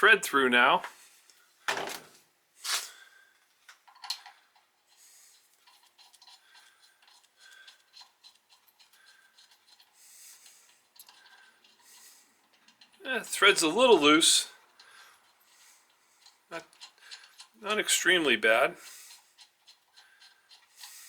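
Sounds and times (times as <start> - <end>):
small ticks: 3.7 - 13.0, 14.6 - 17.6.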